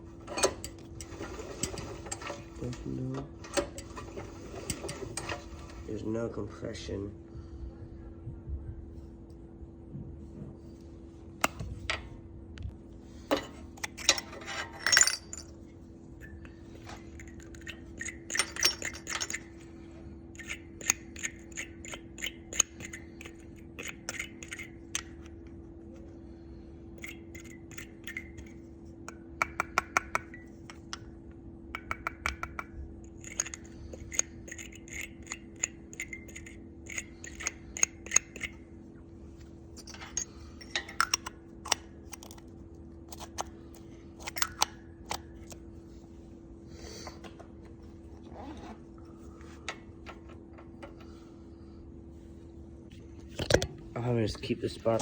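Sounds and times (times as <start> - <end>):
metal hand tools clinking: 13.3 - 15.5, 17.2 - 19.5
socket ratchet clicking: 44.2 - 45.6.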